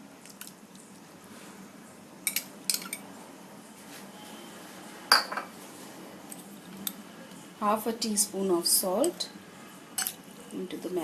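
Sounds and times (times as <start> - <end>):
spoon clinking against bowl: 10.0 - 10.2.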